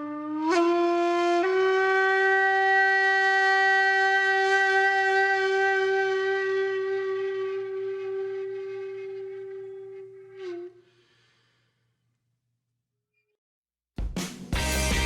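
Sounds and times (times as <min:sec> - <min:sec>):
wind instrument holding long note: 0:00.0 - 0:11.0.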